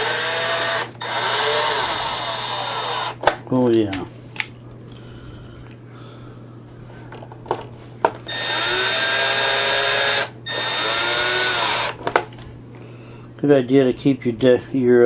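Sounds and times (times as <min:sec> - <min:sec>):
cordless drill driving screws: 0:00.0 - 0:03.2, 0:08.3 - 0:12.0.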